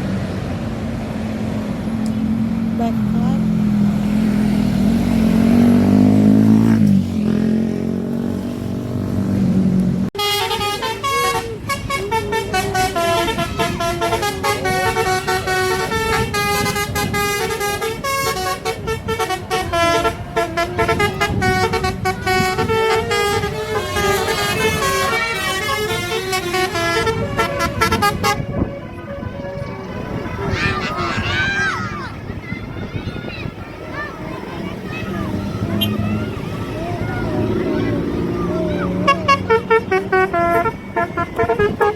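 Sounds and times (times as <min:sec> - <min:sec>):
bus melody horn: 0:02.8 - 0:03.3, 0:10.2 - 0:31.7, 0:33.8 - 0:41.9
deep horn dropping in pitch: 0:10.2 - 0:30.8, 0:35.2 - 0:41.9.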